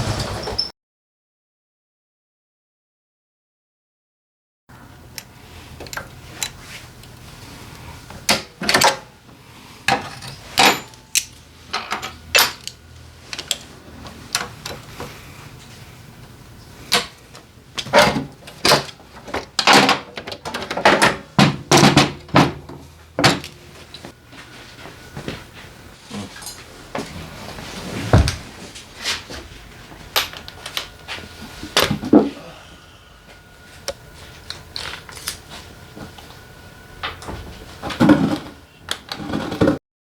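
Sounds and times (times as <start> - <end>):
metal tools clacking: 9.9 - 13.7.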